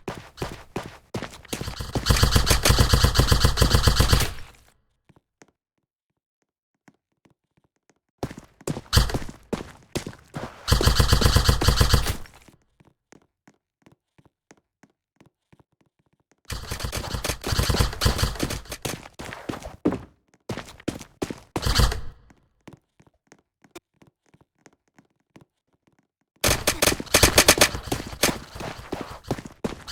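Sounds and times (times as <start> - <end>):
airsoft guns full-auto bursts: 0.0 - 4.6, 8.9 - 9.4, 10.4 - 12.4, 16.5 - 19.2, 21.6 - 22.3, 26.4 - 29.9.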